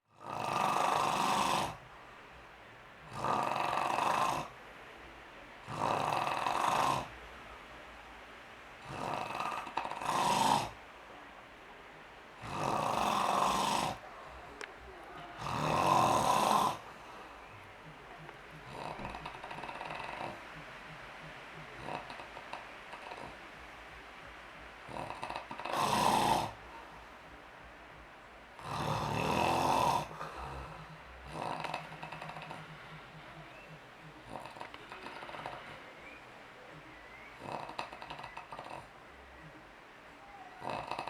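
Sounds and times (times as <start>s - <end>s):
person snoring: 0.2s - 1.8s, 3.1s - 4.5s, 5.7s - 7.1s, 8.8s - 10.8s, 12.4s - 14.1s, 15.1s - 17.5s, 18.5s - 20.4s, 21.7s - 23.4s, 24.9s - 26.9s, 28.6s - 35.9s, 40.6s - 41.0s.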